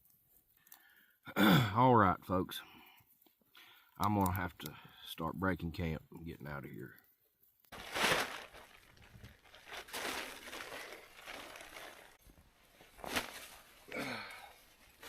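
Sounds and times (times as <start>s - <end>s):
crunching and crinkling handling: 7.6s - 15.0s.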